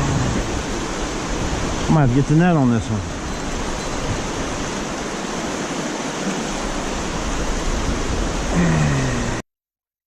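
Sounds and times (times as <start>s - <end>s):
river water rushing: 0.0s - 9.4s
falling vocal sound: 8.5s - 9.4s.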